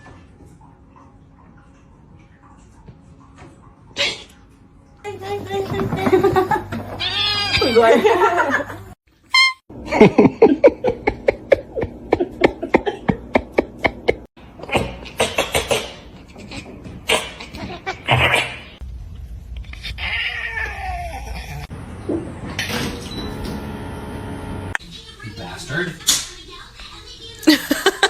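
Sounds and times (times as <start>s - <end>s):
cat crying: 7.0s - 7.9s, 19.8s - 21.7s.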